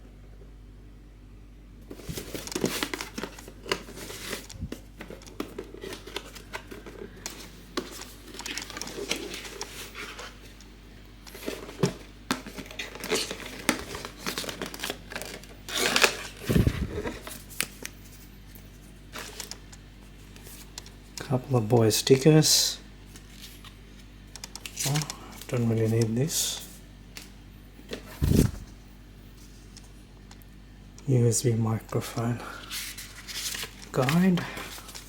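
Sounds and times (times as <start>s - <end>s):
packaging crinkling: 1.9s - 21.0s, 32.0s - 35.0s.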